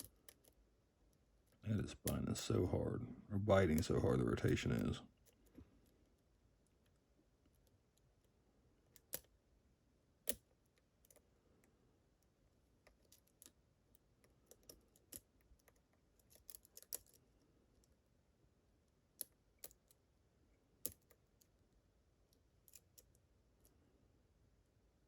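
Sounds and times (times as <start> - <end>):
lock pick clicking: 10.2 - 11.2.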